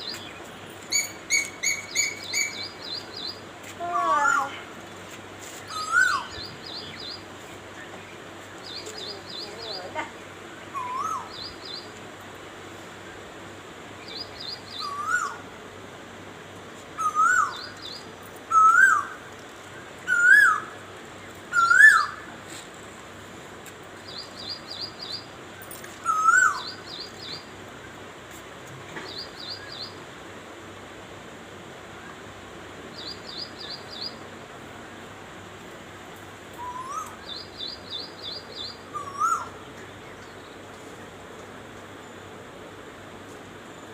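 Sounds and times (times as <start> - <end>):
small bird chirping: 0.0 - 3.4.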